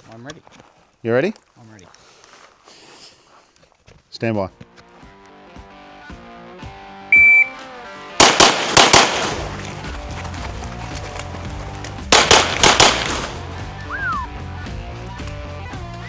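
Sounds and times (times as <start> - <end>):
background music: 4.7 - 16.0
shot timer beep: 7.2 - 7.6
pistol shots: 8.2 - 10.2, 12.1 - 13.7.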